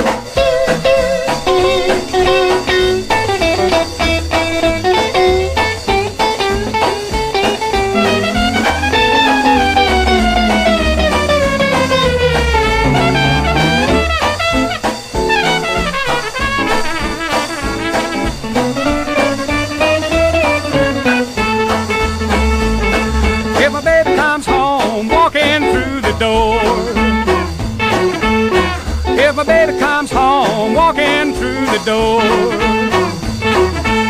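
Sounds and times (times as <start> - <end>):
honky-tonk country music: 0.0 - 34.0
sliding bending lead notes: 1.7 - 15.9, 18.9 - 23.9.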